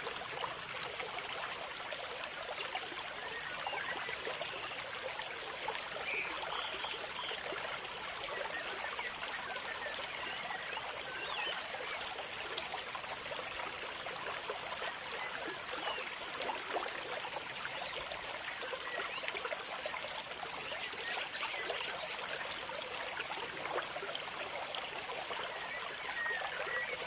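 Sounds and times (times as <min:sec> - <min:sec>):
running water: 0:00.0 - 0:27.0.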